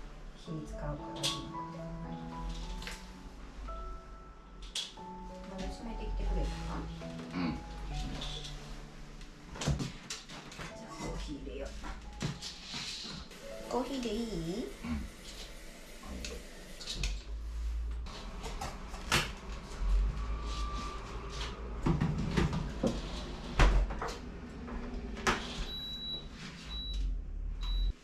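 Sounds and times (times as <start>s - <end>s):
appliance electronic beeps: 25.6s - 28.0s.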